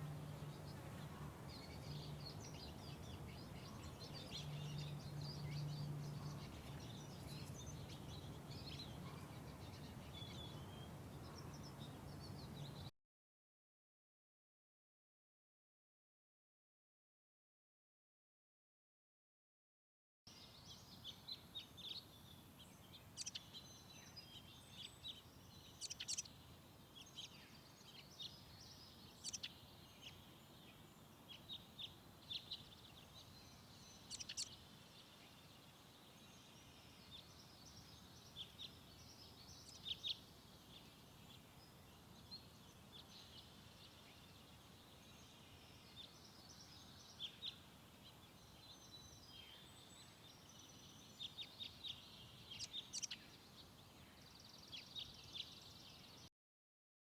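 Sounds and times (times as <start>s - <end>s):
faint bird chirps: 20.3s - 56.3s.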